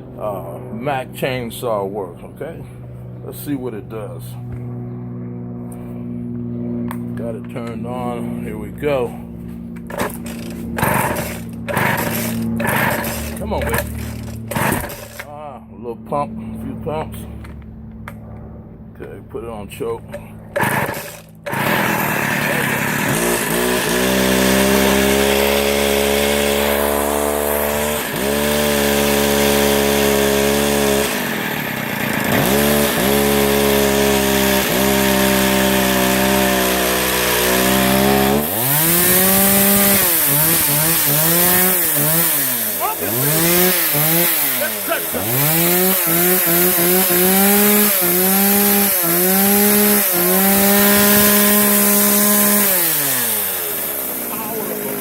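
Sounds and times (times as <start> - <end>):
chainsaw engine revving: 9.8 - 15.4, 20.1 - 55.0.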